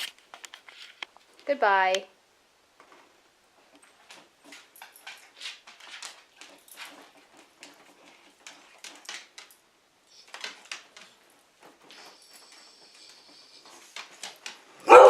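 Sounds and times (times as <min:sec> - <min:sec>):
dog breathy puffs: 0:11.8 - 0:14.6.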